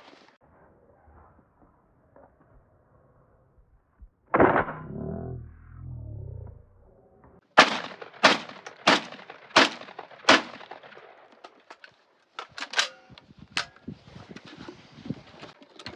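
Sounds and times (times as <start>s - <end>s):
shotgun shots: 4.3s - 5.0s, 7.5s - 11.3s.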